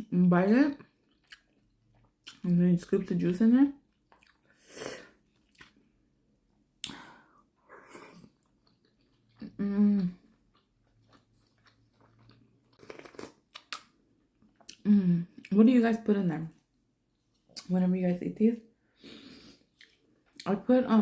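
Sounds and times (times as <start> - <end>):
chewing with wet smacking: 0.8 - 2.5, 3.9 - 4.5, 5.3 - 5.8, 8.2 - 14.8, 19.7 - 20.6.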